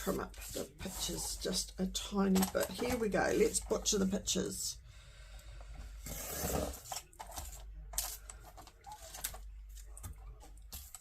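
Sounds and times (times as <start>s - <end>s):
cutting through paper: 0.0s - 4.1s, 6.0s - 9.5s
paper rustling: 2.2s - 3.8s, 6.1s - 11.0s.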